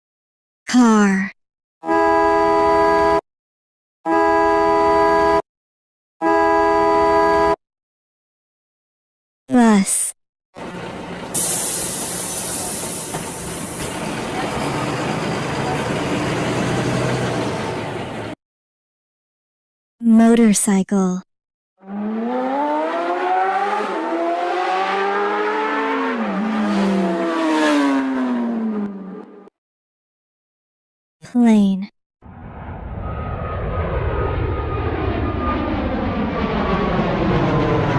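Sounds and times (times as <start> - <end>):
car horn long blasts: 1.8 - 3.2, 4.1 - 5.4, 6.2 - 7.6
motorcycle engine revving: 21.8 - 29.5.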